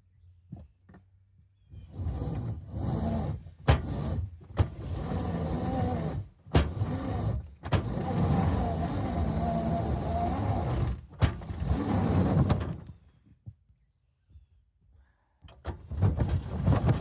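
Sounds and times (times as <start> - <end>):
electric motors whining: 4.7 - 12.8.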